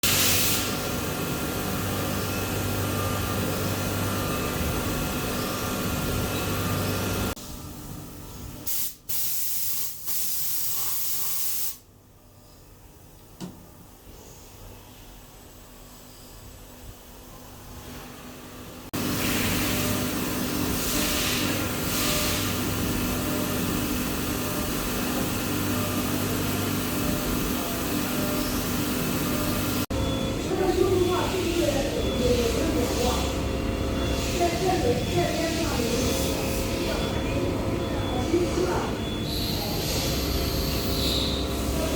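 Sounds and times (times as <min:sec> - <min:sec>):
machine running with hum: 0:00.5 - 0:08.7, 0:12.0 - 0:41.9
burst of hiss: 0:08.7 - 0:11.8.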